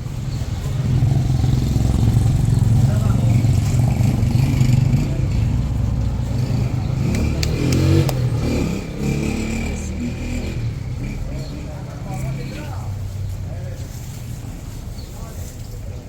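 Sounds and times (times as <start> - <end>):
vehicle engine running: 0.0 - 16.0.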